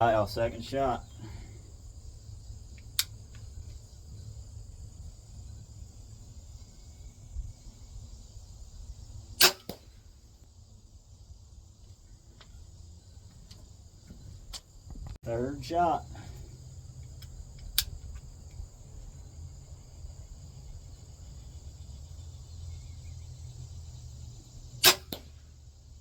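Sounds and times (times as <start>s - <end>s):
crossbow string crack: 9.4s - 10.0s, 24.8s - 25.4s
small click: 17.2s - 18.2s.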